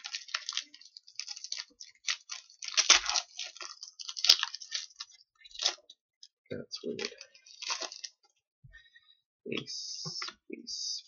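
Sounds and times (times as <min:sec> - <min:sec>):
cards rustling and clicking: 0:00.0 - 0:05.8, 0:06.9 - 0:08.2.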